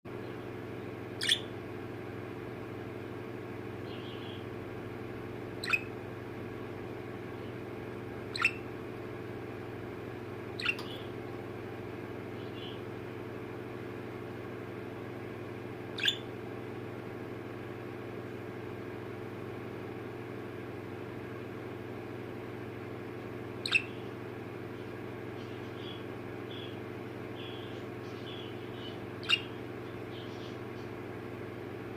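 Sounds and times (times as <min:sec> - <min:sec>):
budgerigar chirping: 0:01.2 - 0:01.5, 0:03.8 - 0:04.5, 0:05.6 - 0:06.0, 0:08.3 - 0:08.7, 0:10.6 - 0:11.1, 0:12.4 - 0:12.8, 0:16.0 - 0:16.3, 0:23.6 - 0:24.1, 0:25.4 - 0:26.8, 0:27.4 - 0:30.6.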